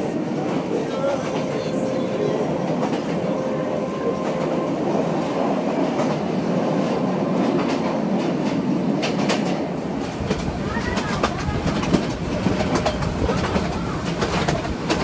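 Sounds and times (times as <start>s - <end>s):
train rumbling: 0.0s - 15.0s
wheels knocking over rail joints: 6.9s - 15.0s.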